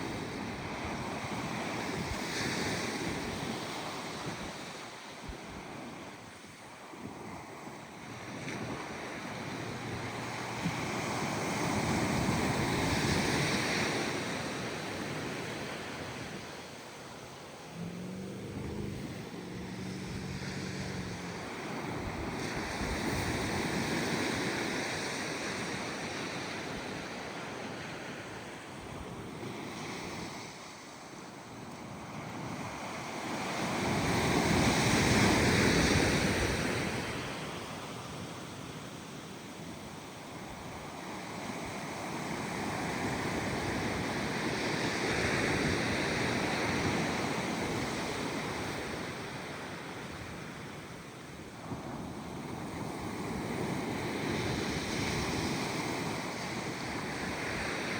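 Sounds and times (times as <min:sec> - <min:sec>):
faint low hum: 0:16.9 - 0:23.5.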